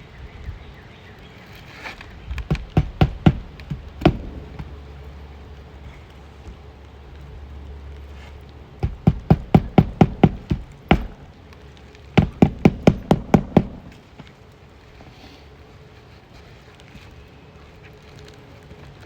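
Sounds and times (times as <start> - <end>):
hammer striking roofing nails: 2.4 - 4.8, 8.8 - 11.3, 12.2 - 14.0.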